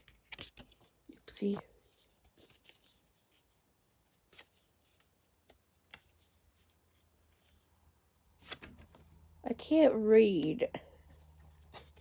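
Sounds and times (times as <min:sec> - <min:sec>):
paper card clicks and rustles: 0:00.0 - 0:06.8, 0:08.4 - 0:09.1, 0:11.5 - 0:12.0.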